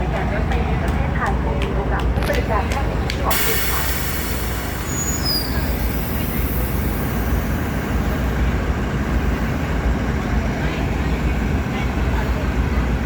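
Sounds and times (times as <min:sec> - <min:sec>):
train rumble: 0:00.0 - 0:13.0
brake squeals: 0:03.3 - 0:07.4
air brakes hissing: 0:03.3 - 0:08.2.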